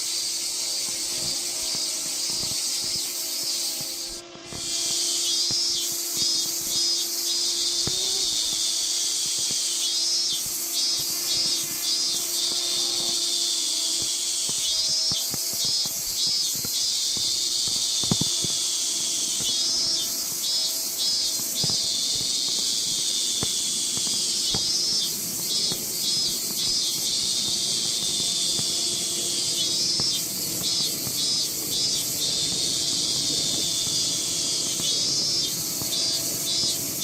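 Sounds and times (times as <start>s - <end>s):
insects singing: 0.0s - 37.0s.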